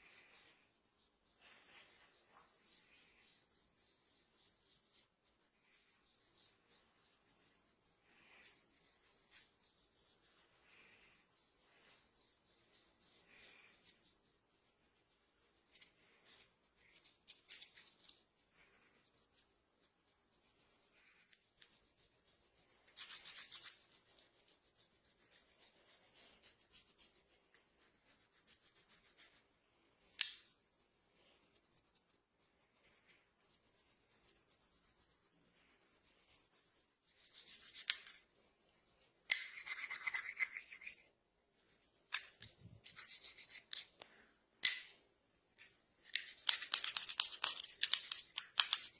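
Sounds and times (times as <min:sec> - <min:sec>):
hands rubbing through hair: 0:37.2 - 0:44.0, 0:45.6 - 0:48.9.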